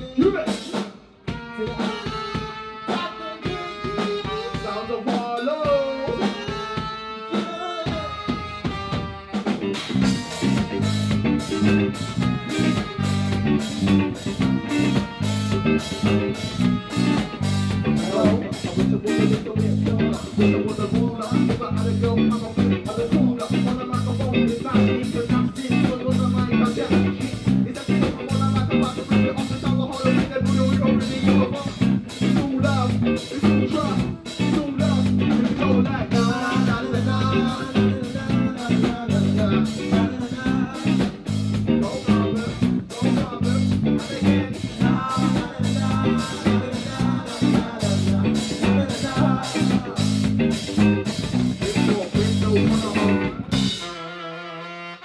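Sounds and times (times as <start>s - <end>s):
drum kit: 0.0s - 54.1s
guitar: 0.0s - 55.0s
live band music: 0.0s - 55.0s.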